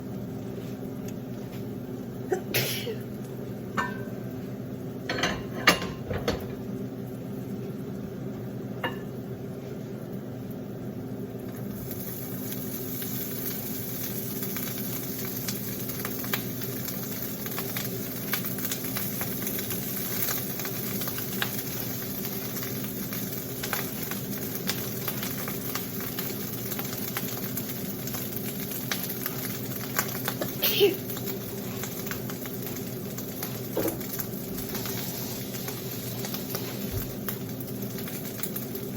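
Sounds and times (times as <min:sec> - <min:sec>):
rice frying sizzle: 0:00.0 - 0:38.9
steady low hum: 0:00.0 - 0:38.9
utensils clinking against pan: 0:05.1 - 0:06.5.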